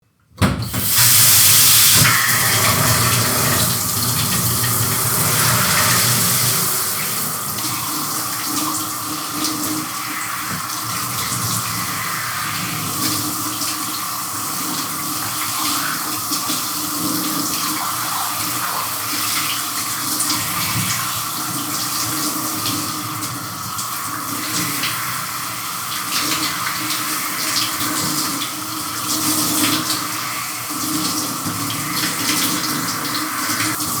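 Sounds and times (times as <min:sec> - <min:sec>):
shower spray hissing: 0:00.8 - 0:16.8
water splashing: 0:00.9 - 0:12.0.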